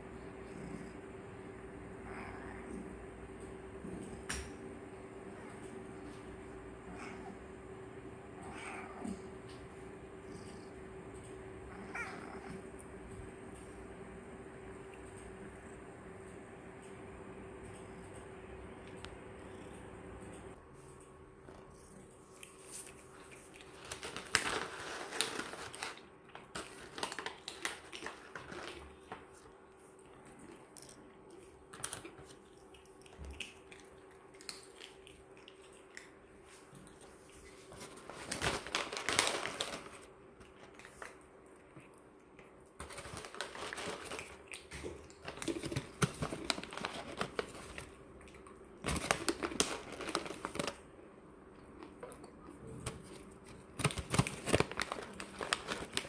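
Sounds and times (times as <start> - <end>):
plastic packaging crinkling: 22.7 - 29.4, 37.7 - 41.1, 42.8 - 48.0, 48.8 - 50.8, 53.0 - 56.0.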